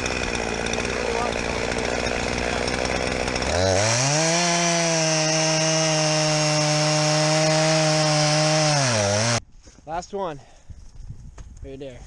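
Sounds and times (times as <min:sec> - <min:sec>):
chainsaw engine revving: 0:00.0 - 0:09.4.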